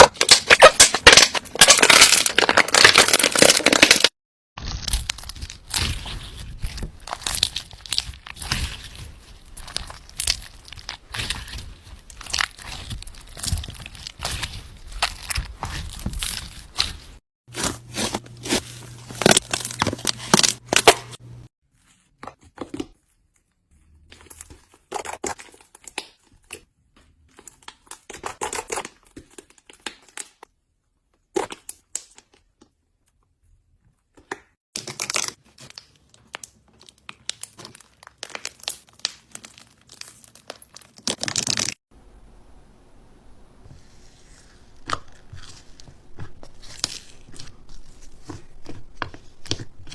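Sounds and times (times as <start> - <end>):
slime crackling and tearing: 0.0 - 20.9, 34.8 - 41.8.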